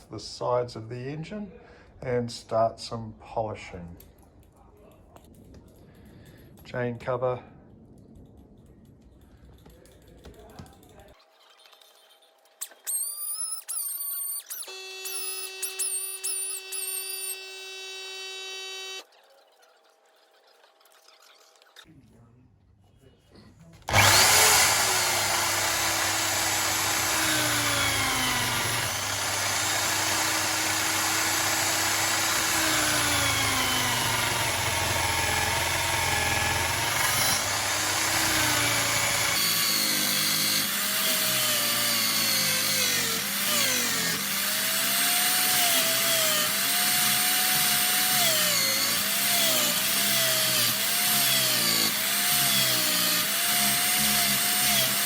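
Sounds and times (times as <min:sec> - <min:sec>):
power drill with wire brush: 0:11.9 - 0:19.1, 0:23.9 - 0:55.0.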